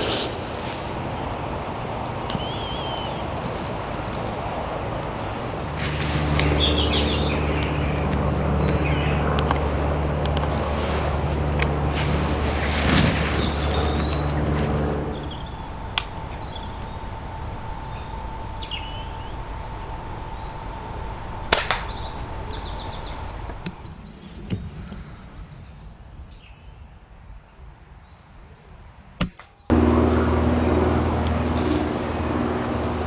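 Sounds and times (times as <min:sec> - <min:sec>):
steady droning: 0:00.0 - 0:23.7, 0:29.7 - 0:33.0
faint birdsong: 0:00.0 - 0:23.9, 0:29.0 - 0:33.0
air rifle shot crack: 0:21.5 - 0:22.1.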